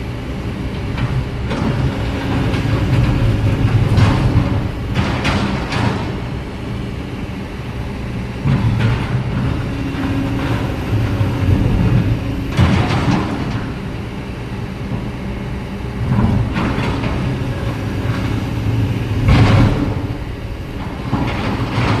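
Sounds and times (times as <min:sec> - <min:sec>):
diesel engine droning: 0:00.0 - 0:22.0.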